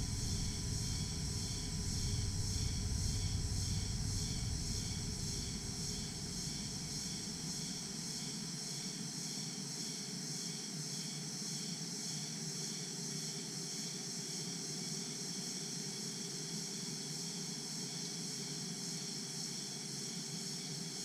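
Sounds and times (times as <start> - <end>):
low steady rumble: 0.0 - 7.6.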